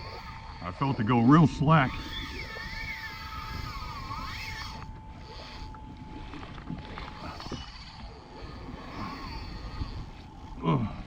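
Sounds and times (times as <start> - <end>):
faint high whine: 0.0 - 11.0
water noise: 0.0 - 11.0
wind noise: 1.5 - 7.7.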